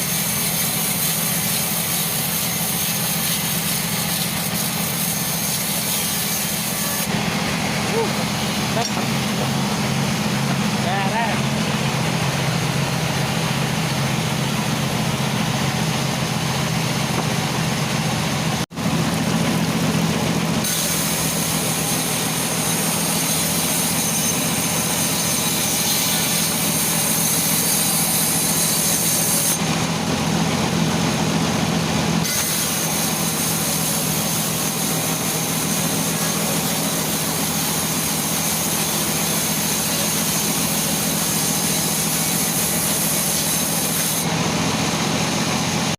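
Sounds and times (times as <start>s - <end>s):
saw blade hissing through log: 0.0s - 11.6s, 20.6s - 30.8s, 32.2s - 45.9s
sawmill saw running: 0.0s - 45.9s.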